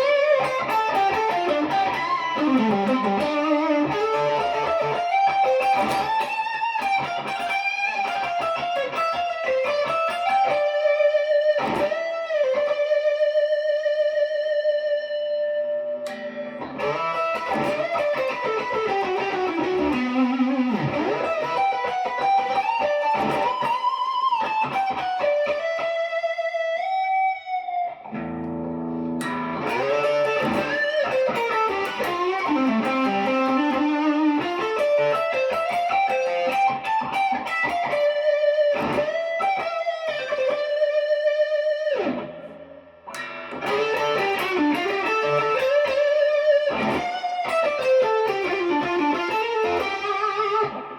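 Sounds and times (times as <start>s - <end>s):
electric guitar lead melody: 0.0s - 50.9s.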